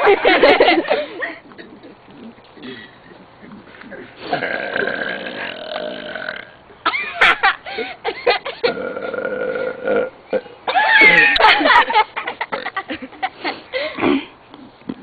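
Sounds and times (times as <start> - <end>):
person burping: 3.9 - 6.6, 8.6 - 10.5.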